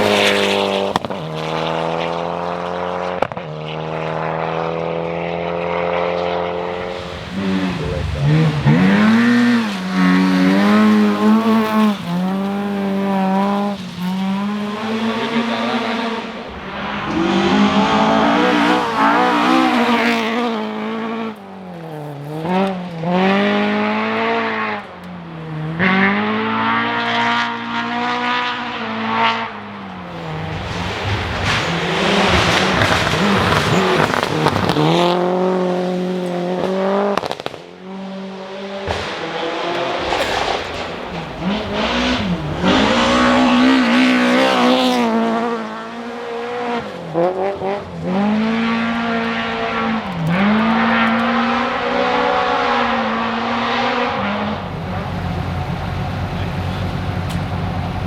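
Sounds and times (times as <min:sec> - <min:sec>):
rally car engine revving: 0:00.0 - 0:58.0
tyre noise: 0:30.1 - 0:37.6, 0:39.8 - 0:45.1.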